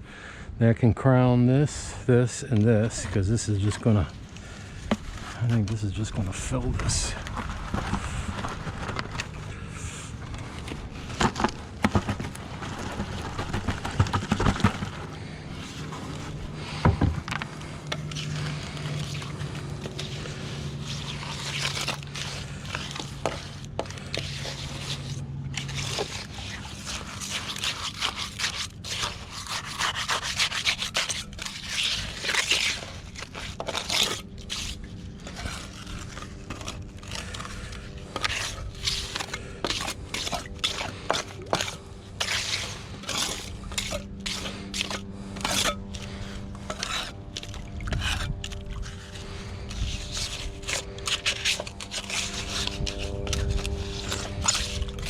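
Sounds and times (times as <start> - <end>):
tool scraping wet concrete: 1.5 - 55.0.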